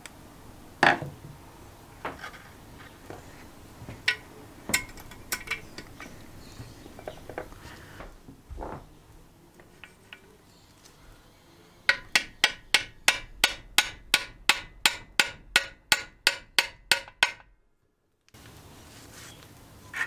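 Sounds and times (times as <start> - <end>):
hammer tapping on metal: 4.0 - 6.0, 11.9 - 17.5.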